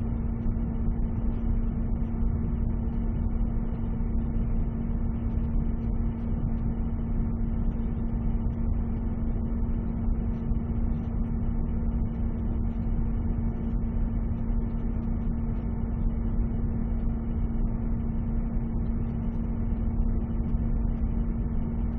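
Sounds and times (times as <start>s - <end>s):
constant hum: 0.0s - 21.9s.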